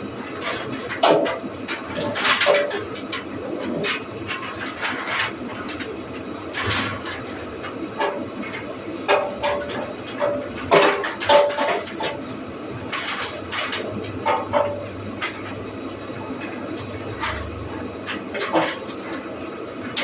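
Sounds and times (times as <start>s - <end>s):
wooden knocks and clatter: 6.5s - 12.3s, 12.9s - 15.6s, 16.2s - 19.3s.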